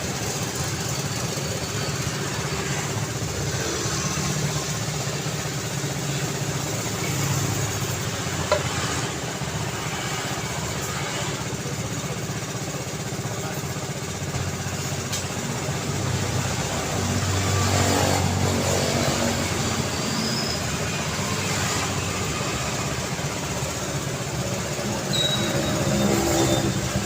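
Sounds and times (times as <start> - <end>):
car engines and tyre noise: 0.0 - 27.0
high squeak: 19.9 - 20.8, 25.0 - 27.0.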